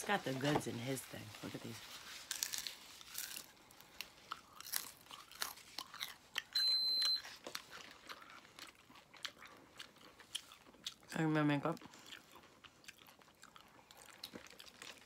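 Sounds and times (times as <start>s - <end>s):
chewing and crunching fried food: 1.5s - 15.0s
high-pitched beep: 6.6s - 7.2s.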